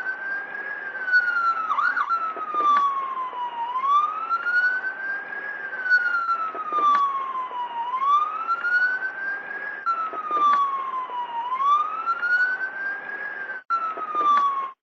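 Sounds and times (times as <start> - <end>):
ambulance siren wailing: 0.0 - 14.8.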